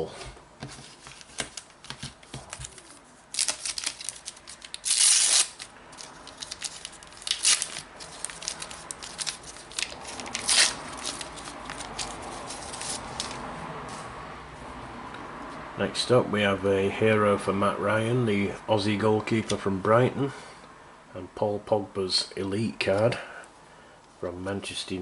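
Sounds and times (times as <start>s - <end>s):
foil crinkling and rustling: 0.8s - 13.4s
foil packet ripping: 1.2s - 13.4s.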